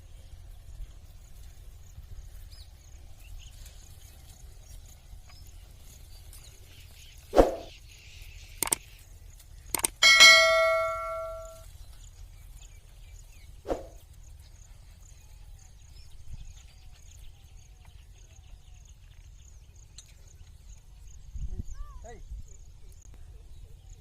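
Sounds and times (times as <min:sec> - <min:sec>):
sharp knocks: 0:09.8 - 0:11.6
ringing metal clang: 0:10.0 - 0:11.6.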